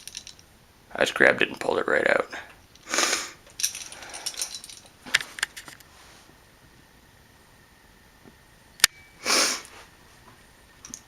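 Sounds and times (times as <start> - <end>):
small metallic rattles: 0.0 - 0.6, 2.6 - 5.8
room noise: 0.0 - 11.0.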